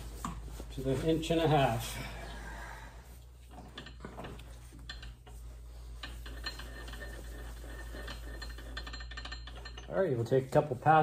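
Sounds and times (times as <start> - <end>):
steady low hum: 0.0 - 11.0
metal tools clicking and clinking: 3.5 - 10.3.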